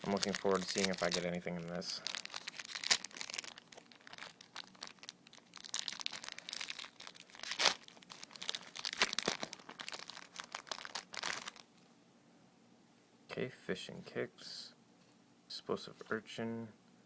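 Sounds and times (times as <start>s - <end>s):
foil wrapper crinkling and tearing: 0.0s - 11.7s.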